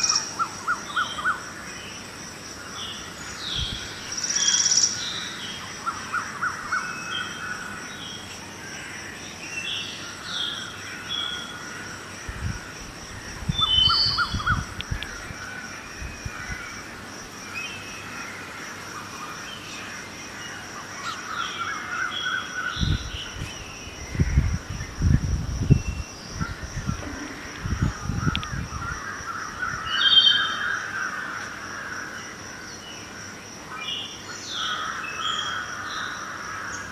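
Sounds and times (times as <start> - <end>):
songbirds chirping: 0.0 - 36.9
wind buffeting microphone: 3.5 - 4.0, 12.1 - 17.2, 22.6 - 30.0
crows cawing: 34.6 - 36.9.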